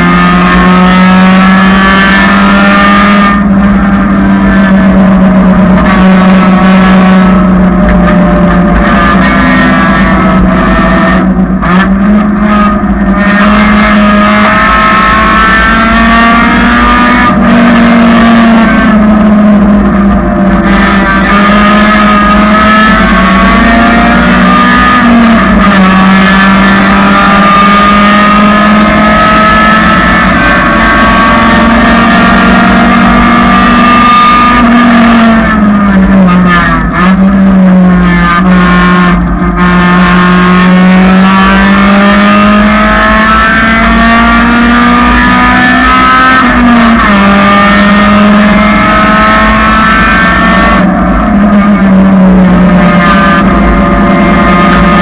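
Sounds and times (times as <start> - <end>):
car engine running hard: 0.0 - 55.0.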